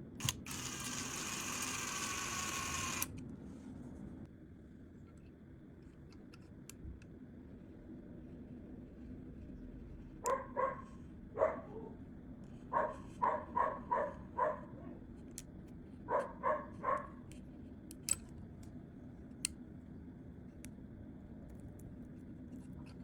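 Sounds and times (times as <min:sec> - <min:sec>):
dog barking: 0:10.2 - 0:12.0, 0:12.7 - 0:15.0, 0:16.1 - 0:17.2.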